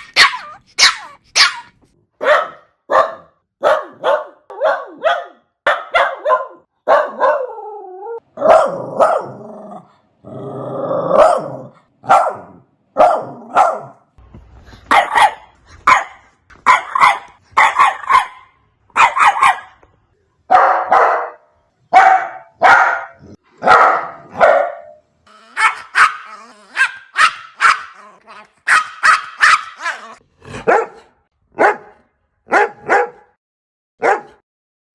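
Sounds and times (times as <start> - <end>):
puppy whining: 0.0 - 1.7, 25.3 - 28.6
puppies barking: 0.0 - 7.6, 22.0 - 31.0.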